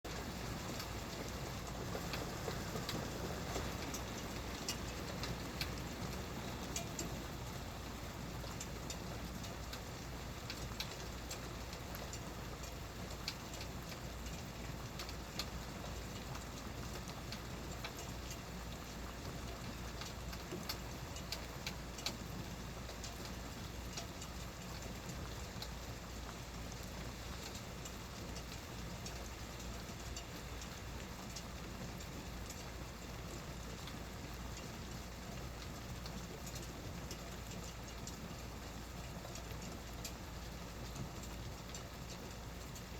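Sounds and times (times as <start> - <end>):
steady rain falling: 0.0 - 42.9.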